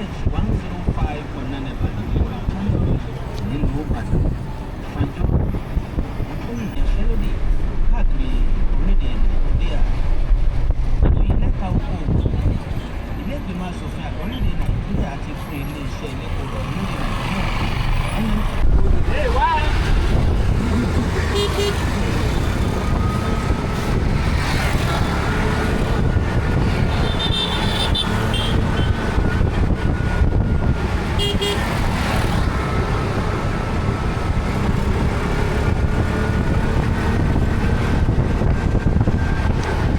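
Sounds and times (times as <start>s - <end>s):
traffic engine and tyre rumble: 0.0s - 39.9s
car horn toots: 21.2s - 22.8s, 26.8s - 29.1s, 31.1s - 32.0s.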